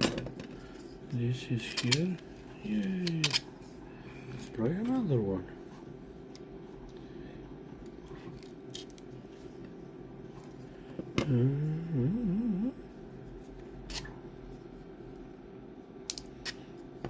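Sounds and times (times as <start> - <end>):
plastic parts clicking: 1.6 - 3.4
short wordless vocal sound: 11.2 - 12.9.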